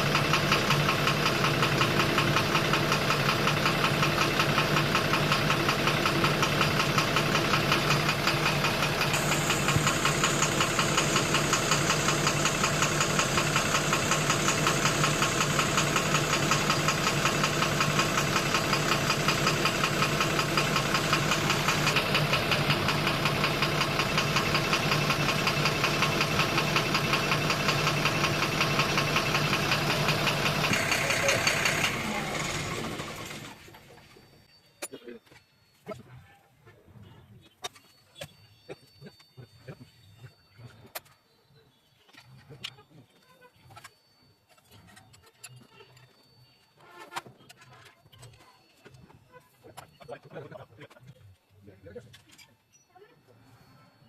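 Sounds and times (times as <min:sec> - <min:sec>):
rapid knocking inside engine: 0:00.0 - 0:33.5
car engine running: 0:00.0 - 0:34.3.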